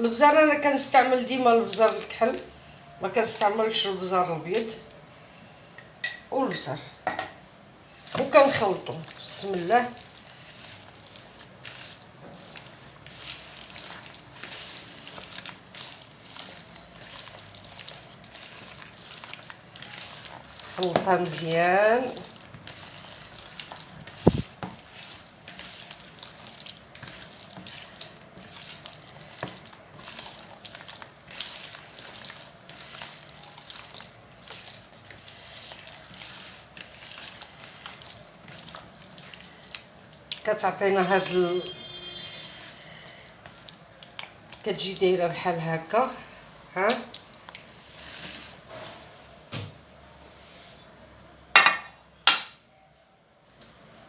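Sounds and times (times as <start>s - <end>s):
wet squishing and stirring: 0.0s - 5.1s, 7.8s - 49.4s, 53.4s - 54.0s.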